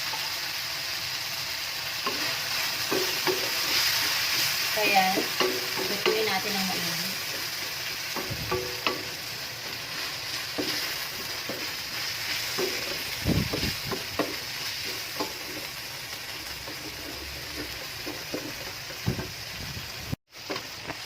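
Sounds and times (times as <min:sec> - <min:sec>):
meat sizzling in a pan: 0:00.0 - 0:21.0
spatula knocking against pan: 0:05.2 - 0:06.3, 0:08.1 - 0:09.2, 0:12.5 - 0:15.6.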